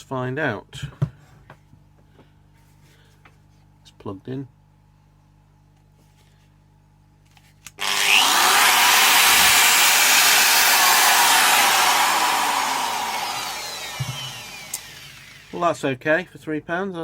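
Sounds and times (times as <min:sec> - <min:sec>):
angle grinder whirring: 0:07.8 - 0:15.6
angle grinder switch click: 0:13.8 - 0:15.1.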